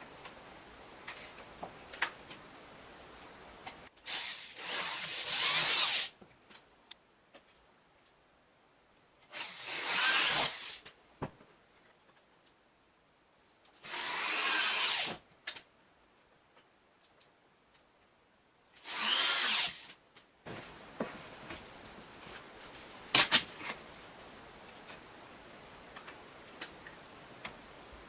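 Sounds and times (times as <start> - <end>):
electric drill bursts: 4.1 - 6.1, 9.3 - 10.8, 13.8 - 15.2, 18.8 - 19.9.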